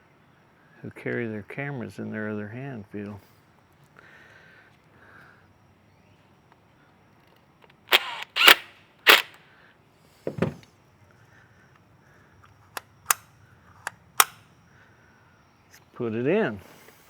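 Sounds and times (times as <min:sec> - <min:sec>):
metal latch clicks and knocks: 0:10.3 - 0:10.6.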